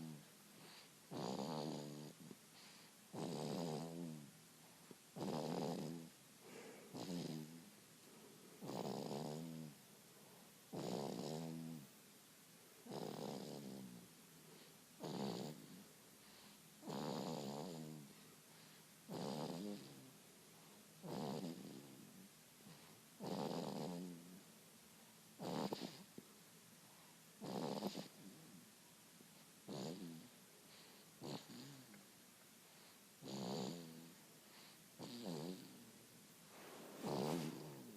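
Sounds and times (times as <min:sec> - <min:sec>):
rasping snoring: 0:00.0 - 0:04.3, 0:05.2 - 0:06.1, 0:06.9 - 0:07.7, 0:08.6 - 0:09.7, 0:10.7 - 0:11.9, 0:12.8 - 0:14.0, 0:15.0 - 0:15.8, 0:16.8 - 0:18.1, 0:19.1 - 0:20.0, 0:21.0 - 0:22.0, 0:22.7 - 0:24.3, 0:25.4 - 0:26.0, 0:27.4 - 0:28.4, 0:29.7 - 0:30.3, 0:31.2 - 0:32.0, 0:33.2 - 0:35.8, 0:37.0 - 0:37.9.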